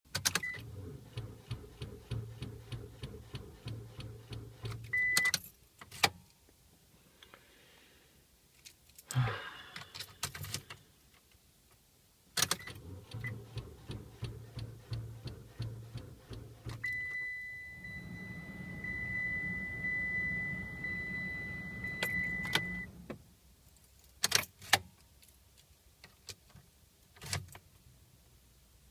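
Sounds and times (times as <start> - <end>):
rapid clicking of car starter: 0.1 - 4.9, 12.4 - 17.0
low hum: 13.2 - 23.1
high-pitched warning beep: 16.8 - 22.9.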